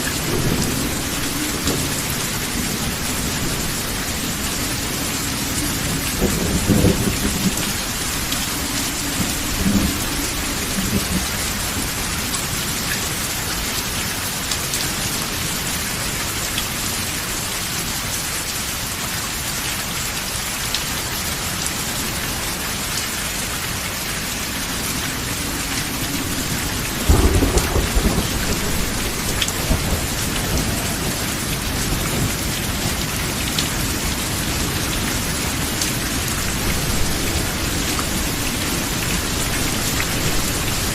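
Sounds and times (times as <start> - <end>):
thunder rumbling: 0.0 - 12.2, 24.6 - 40.9
steady rain: 0.0 - 40.9.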